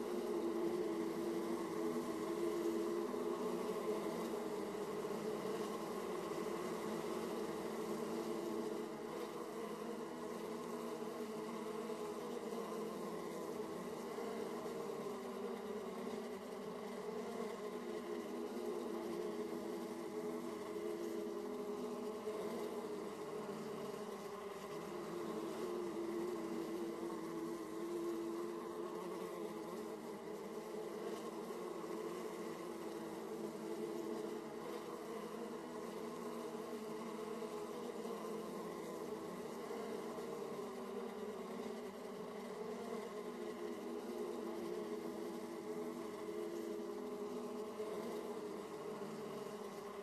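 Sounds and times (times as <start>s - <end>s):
honeybees buzzing: 0.0s - 50.0s.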